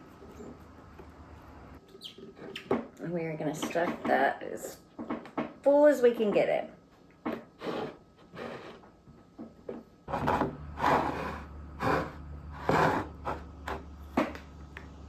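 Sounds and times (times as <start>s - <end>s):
refrigerator humming: 10.1s - 15.0s.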